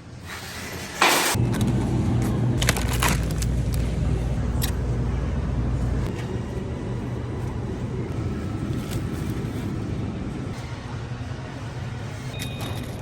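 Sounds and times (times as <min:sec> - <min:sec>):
street noise: 0:01.3 - 0:13.0.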